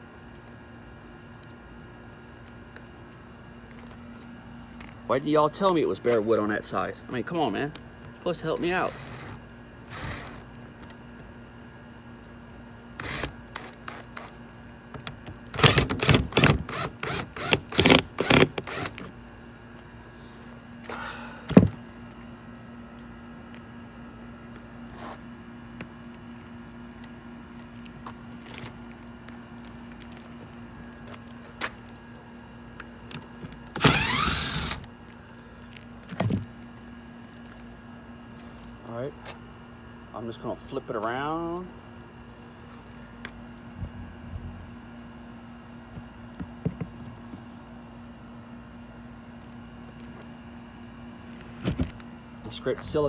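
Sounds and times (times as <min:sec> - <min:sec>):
steady low hum: 0:00.0 - 0:53.0
power tool motor whirring: 0:08.5 - 0:10.5, 0:13.0 - 0:14.4, 0:15.5 - 0:19.1, 0:33.7 - 0:34.9.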